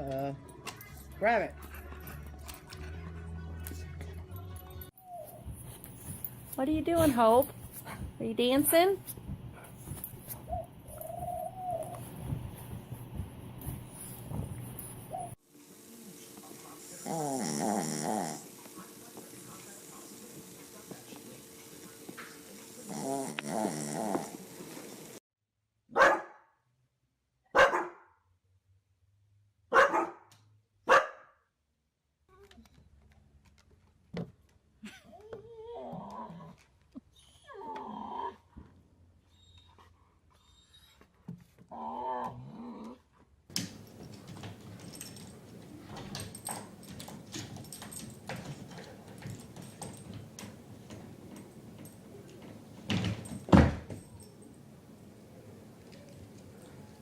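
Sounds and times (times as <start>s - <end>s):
dog barking: 25.9s - 26.5s, 27.5s - 28.1s, 29.7s - 30.3s, 30.9s - 31.4s.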